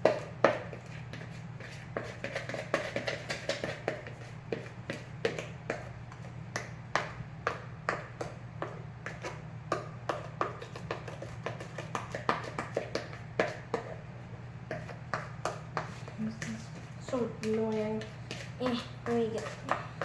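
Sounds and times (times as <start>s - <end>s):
spoon scraping a bowl: 15.8s - 20.0s.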